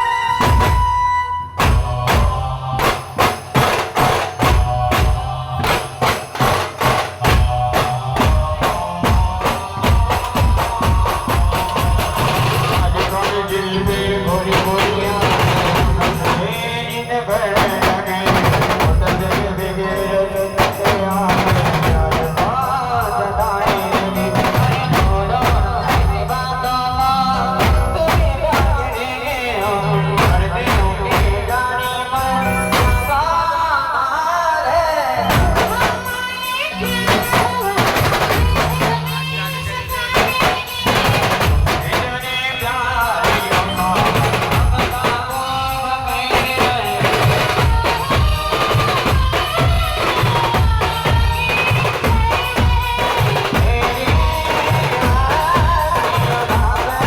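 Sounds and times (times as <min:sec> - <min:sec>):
fast drumming: 0:00.0 - 0:01.0, 0:01.6 - 0:33.3, 0:35.2 - 0:57.0.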